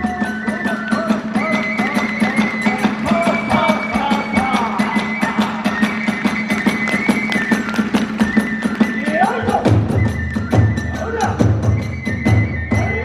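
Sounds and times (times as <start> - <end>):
bamboo flute: 0.0 - 13.0
fast percussion strokes: 0.0 - 13.0
heavy low drum beats: 8.0 - 13.0.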